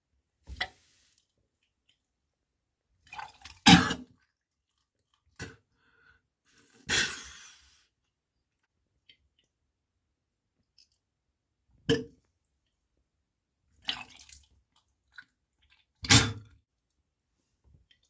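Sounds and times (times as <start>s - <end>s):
person gagging and retching: 3.5s - 4.2s, 16.0s - 16.6s.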